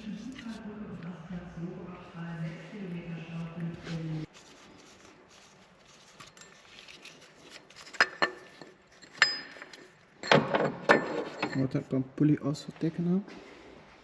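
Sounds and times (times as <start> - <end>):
metal tools clinking: 6.2 - 12.0.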